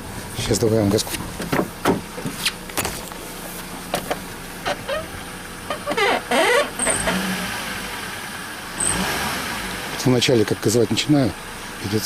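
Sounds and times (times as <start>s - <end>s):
car engine revving: 4.6s - 11.9s.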